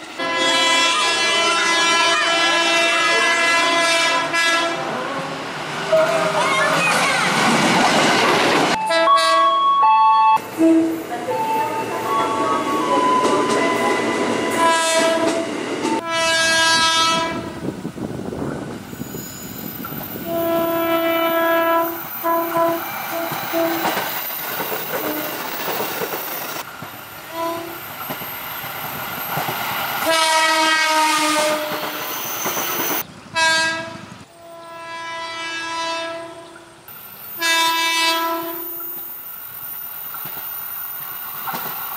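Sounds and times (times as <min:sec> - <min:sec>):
trains running on rails: 0:00.0 - 0:41.9
train horn blasts: 0:00.1 - 0:05.1, 0:08.8 - 0:17.6, 0:20.2 - 0:24.0, 0:27.3 - 0:27.9, 0:30.0 - 0:32.0, 0:33.4 - 0:36.8, 0:37.4 - 0:39.0.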